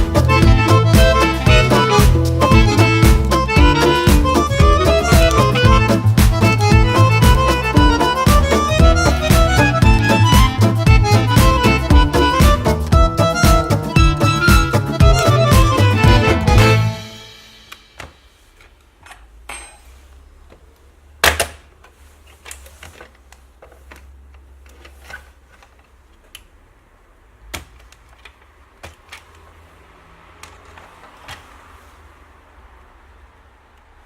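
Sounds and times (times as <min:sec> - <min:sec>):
laptop parts clicking: 0:27.5 - 0:29.5.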